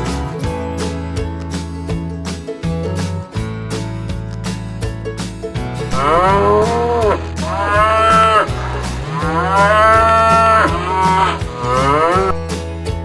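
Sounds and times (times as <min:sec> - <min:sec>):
soft guitar music: 0:00.0 - 0:13.0
cow mooing: 0:05.9 - 0:12.4.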